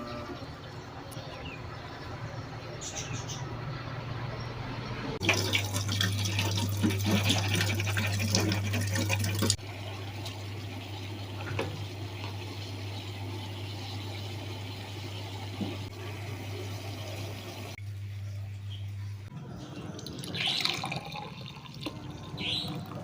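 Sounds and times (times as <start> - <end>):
water pouring and splashing: 5.2 - 13.2, 20.0 - 23.0.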